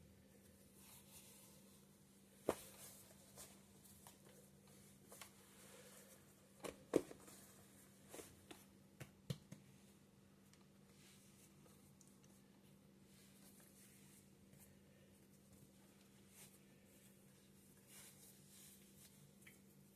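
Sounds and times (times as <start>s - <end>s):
faint steady hum: 0.0s - 19.9s
dough squishes and taps: 8.5s - 9.7s.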